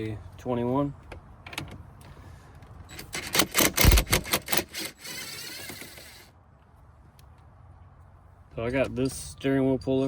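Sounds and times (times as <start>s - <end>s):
impact wrench spinning freely: 3.3s - 6.3s.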